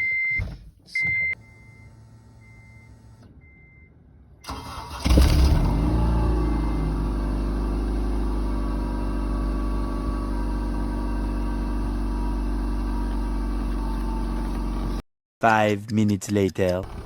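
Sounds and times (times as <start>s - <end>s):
car engine revving and idling: 4.6s - 15.0s.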